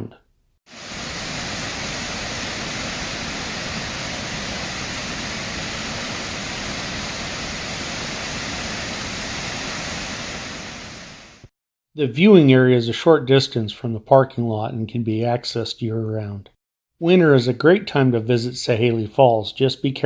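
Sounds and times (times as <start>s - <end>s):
waterfall rushing: 0.7s - 11.5s.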